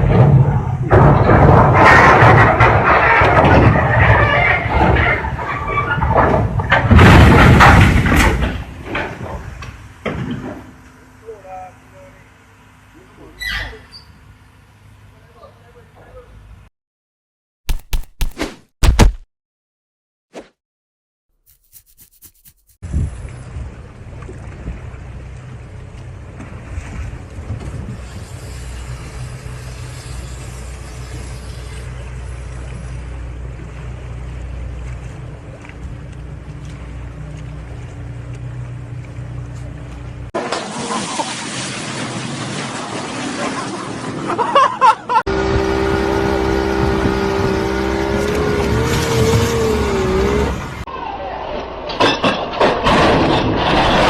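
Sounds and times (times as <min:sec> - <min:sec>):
wind noise on microphone: 0:22.8 - 0:23.8, 0:26.8 - 0:28.5
boat motor running: 0:23.2 - 0:40.3, 0:45.3 - 0:50.5.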